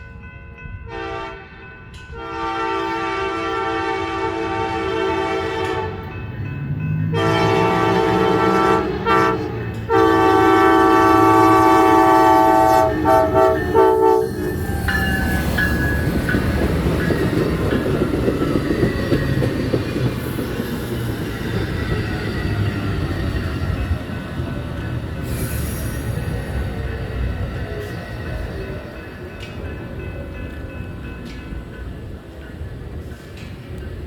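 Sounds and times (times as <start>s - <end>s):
train rumbling past: 0.0s - 34.0s
train horn blasts: 0.8s - 6.3s, 7.1s - 14.6s.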